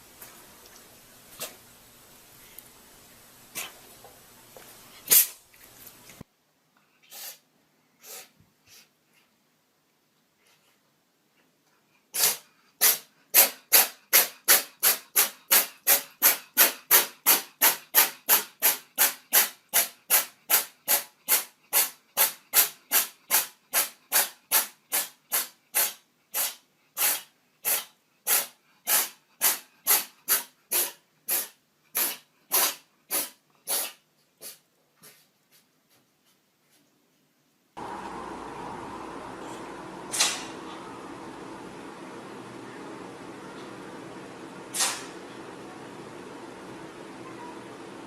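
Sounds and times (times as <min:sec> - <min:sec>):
cat sneezing: 0:07.1 - 0:07.4, 0:08.0 - 0:08.4, 0:12.2 - 0:13.8, 0:20.1 - 0:34.6, 0:44.7 - 0:45.1.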